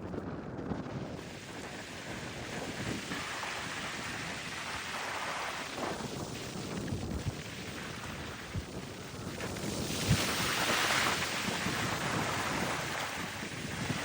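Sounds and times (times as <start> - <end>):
wind buffeting microphone: 0.0 - 14.0
ocean surf breaking: 1.2 - 6.9, 9.6 - 14.0.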